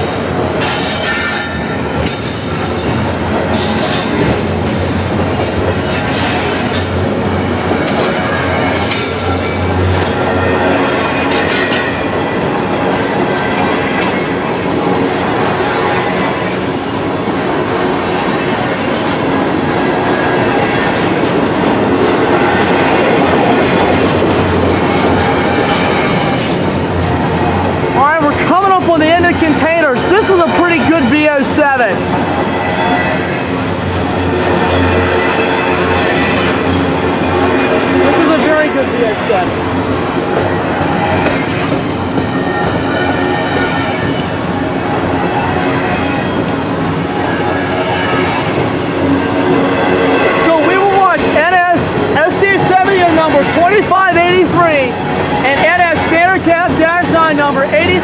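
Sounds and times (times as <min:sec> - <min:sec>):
steel wheels squealing and clacking: 0:00.0 - 0:07.1, 0:07.8 - 0:13.1, 0:18.8 - 0:19.4, 0:32.2 - 0:37.0, 0:40.4 - 0:44.2
freight train cars rolling past: 0:00.0 - 0:58.0.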